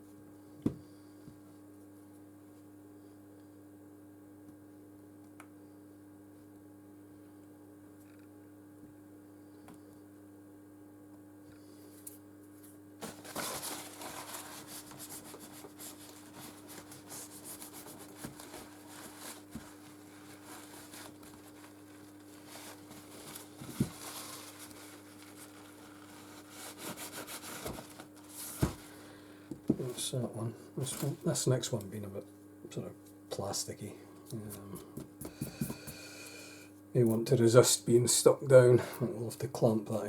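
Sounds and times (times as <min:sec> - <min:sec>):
steady electrical hum: 0:00.0 - 0:40.0.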